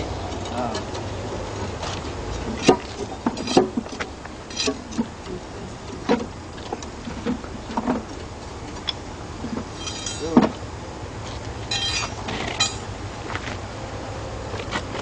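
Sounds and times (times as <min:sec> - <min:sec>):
low hum: 0:00.0 - 0:14.5
distant voices: 0:00.0 - 0:15.0
metallic clinks: 0:09.8 - 0:10.4, 0:11.7 - 0:12.9.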